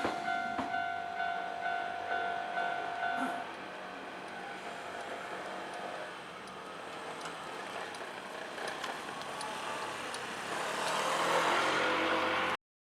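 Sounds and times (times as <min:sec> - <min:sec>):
vehicle passing: 0:09.4 - 0:12.6.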